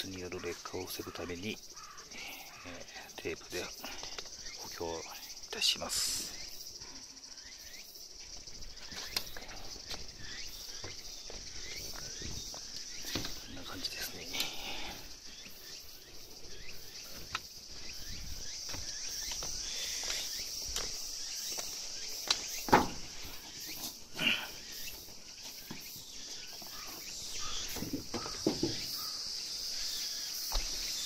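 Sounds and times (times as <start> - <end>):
high-pitched insect chorus: 0.0 - 31.0
knocks and scuffs: 18.6 - 19.6.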